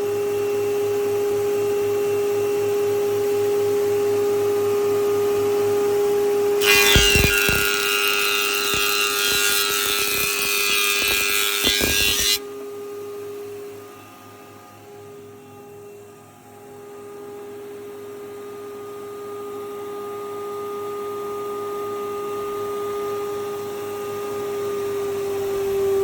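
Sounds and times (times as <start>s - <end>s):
thicknesser motor whining hum: 6.6s - 18.2s.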